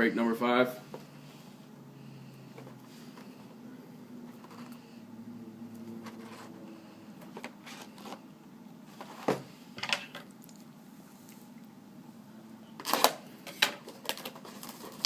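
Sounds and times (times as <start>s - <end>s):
low steady hum: 0.0s - 15.0s
packaging crackling rustles: 12.8s - 15.0s.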